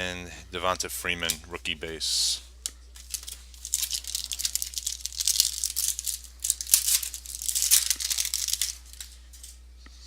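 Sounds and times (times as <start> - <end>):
foil wrapper crinkling and tearing: 3.0 - 9.2.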